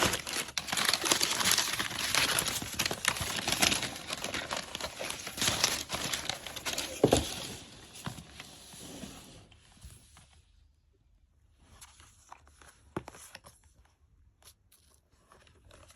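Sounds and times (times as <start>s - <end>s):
packaging rustling and crinkling: 0.0s - 9.4s.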